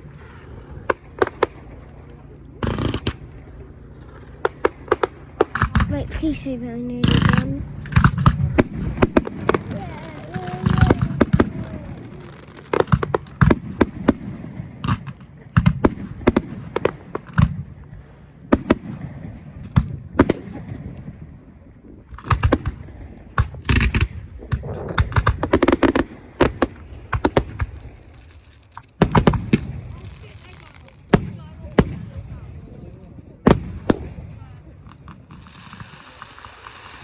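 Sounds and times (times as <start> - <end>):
fireworks bangs and crackles: 0.0 - 37.0.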